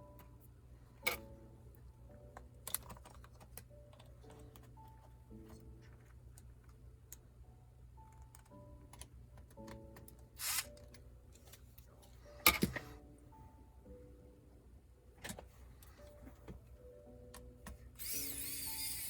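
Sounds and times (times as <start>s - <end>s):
soft background music: 0.0s - 19.0s
laptop parts clicking: 2.3s - 6.5s, 17.4s - 19.0s.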